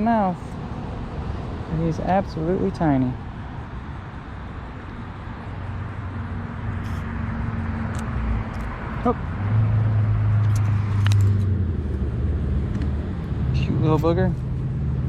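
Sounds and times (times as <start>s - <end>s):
low engine hum: 0.0s - 15.0s
vehicle driving past: 4.4s - 15.0s.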